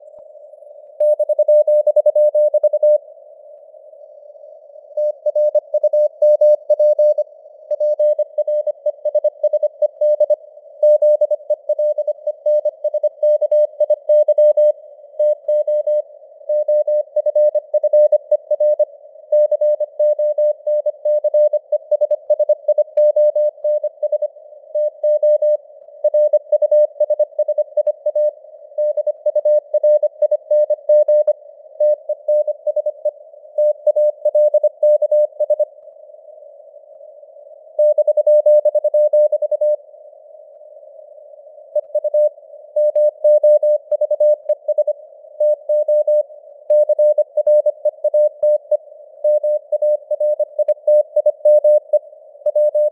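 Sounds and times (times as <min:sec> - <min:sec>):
faint radio noise hiss: 0:35.2 - 0:38.4, 0:39.3 - 0:47.4.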